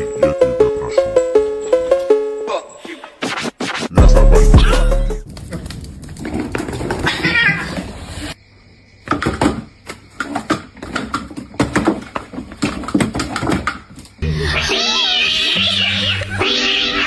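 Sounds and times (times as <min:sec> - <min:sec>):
cat meowing: 0:14.5 - 0:17.0.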